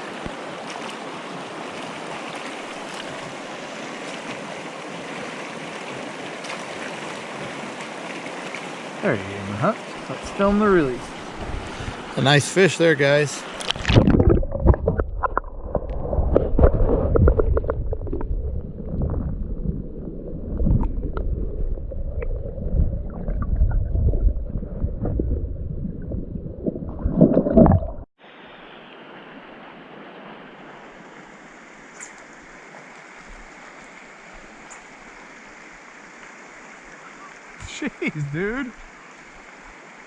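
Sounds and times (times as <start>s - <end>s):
water sloshing and gurgling: 0.0s - 12.6s, 13.4s - 28.1s, 29.7s - 40.0s
stream rushing: 0.0s - 17.2s, 27.2s - 40.0s.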